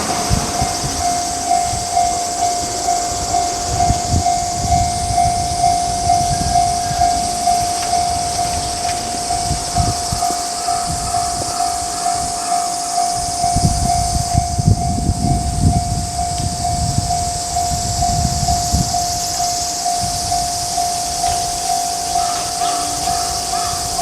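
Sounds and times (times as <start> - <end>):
train wheel thumps: 0.0 - 4.9
passing train rumble: 0.0 - 24.0
railroad crossing alarm pulsing: 0.0 - 24.0.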